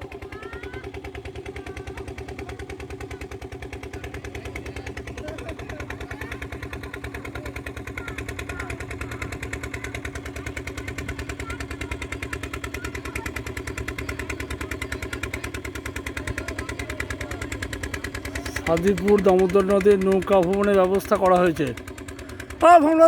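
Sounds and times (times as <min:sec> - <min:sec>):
boat engine running: 0:00.0 - 0:23.0.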